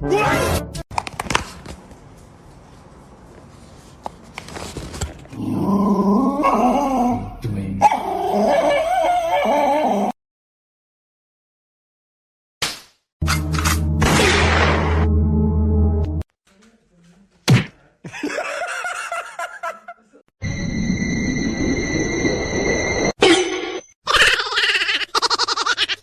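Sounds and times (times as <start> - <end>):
dog whining: 7.8 - 10.1.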